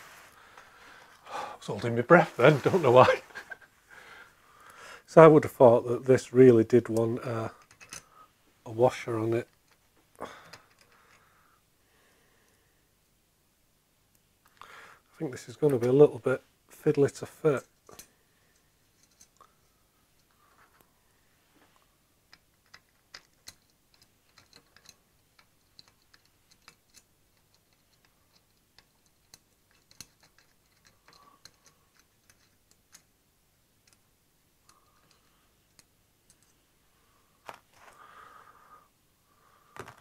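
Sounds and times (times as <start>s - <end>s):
small metal parts clicking: 7.6s - 8.1s, 10.4s - 11.2s, 22.3s - 33.1s, 34.7s - 36.5s.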